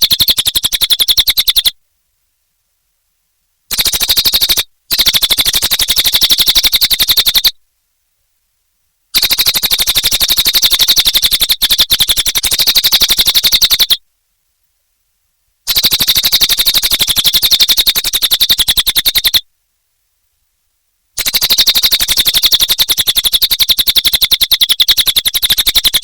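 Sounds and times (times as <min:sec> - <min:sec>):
songbird chattering trill: 0:00.0 - 0:01.8, 0:03.7 - 0:07.6, 0:09.2 - 0:14.0, 0:15.7 - 0:19.4, 0:21.2 - 0:26.0.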